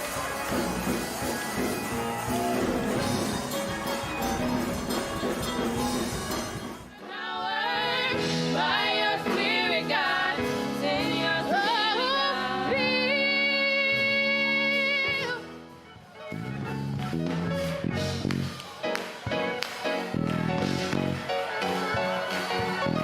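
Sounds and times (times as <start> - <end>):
band playing gospel music: 0.0 - 23.0
voices singing: 1.0 - 15.3.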